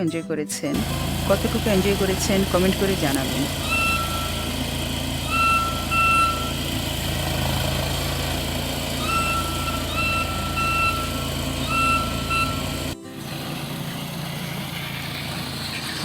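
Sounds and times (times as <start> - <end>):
vehicle engine rumbling: 0.8 - 16.0
high single-pitched beep: 3.6 - 4.6, 5.2 - 6.7, 9.0 - 12.9.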